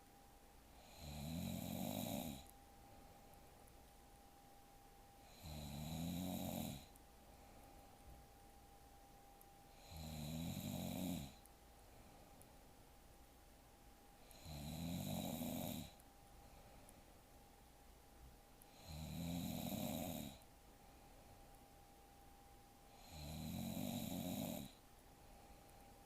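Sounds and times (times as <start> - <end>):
woman snoring: 0.8 - 2.5, 5.2 - 6.9, 9.7 - 11.4, 14.2 - 16.0, 18.7 - 20.4, 22.9 - 24.8.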